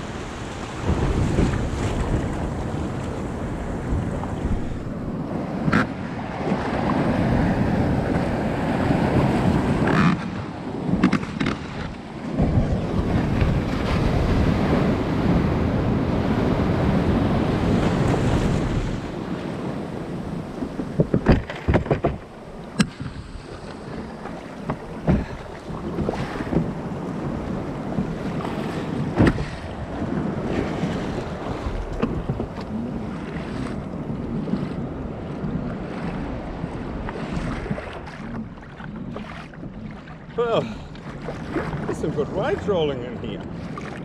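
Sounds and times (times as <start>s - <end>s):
surf on beach: 0.0s - 44.0s
wind buffeting microphone: 0.0s - 44.0s.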